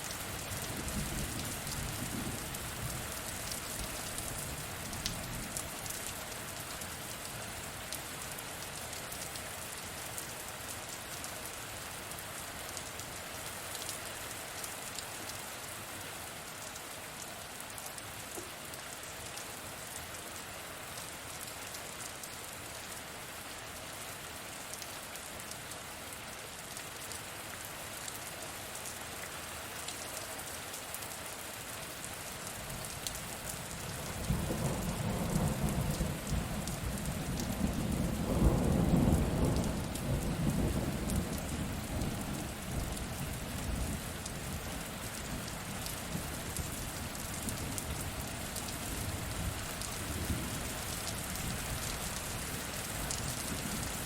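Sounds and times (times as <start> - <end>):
raindrops ticking on a surface: 0.0 - 15.8, 16.4 - 23.7, 24.4 - 54.0
steady rain falling: 0.0 - 54.0
low rumble of thunder: 33.9 - 44.1.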